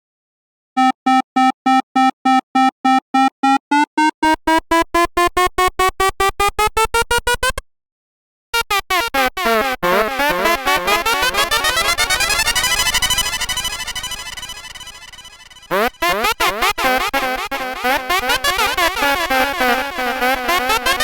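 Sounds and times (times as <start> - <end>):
fast beeps climbing in pitch: 0.8 - 4.6.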